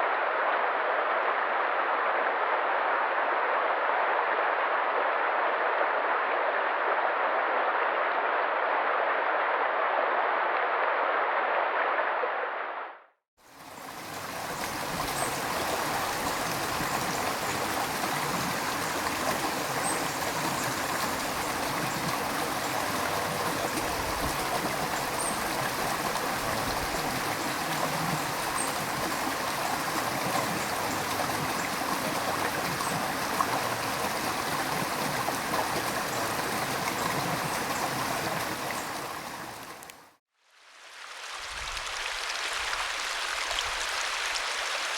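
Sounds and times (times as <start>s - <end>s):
river water rushing: 13.4s - 44.9s.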